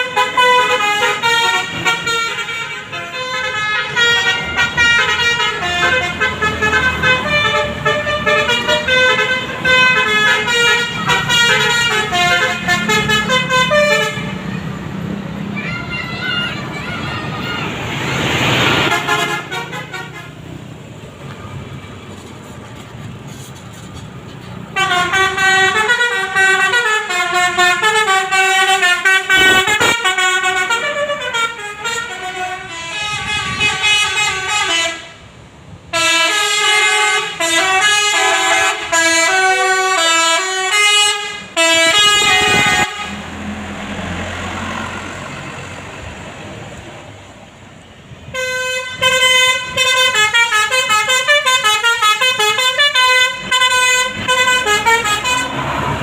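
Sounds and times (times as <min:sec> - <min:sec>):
bus air horn playing tune: 0:00.0 - 0:14.7, 0:18.7 - 0:20.4, 0:24.7 - 0:35.3, 0:35.9 - 0:43.2, 0:48.2 - 0:55.7
bus engine running: 0:00.0 - 0:56.0.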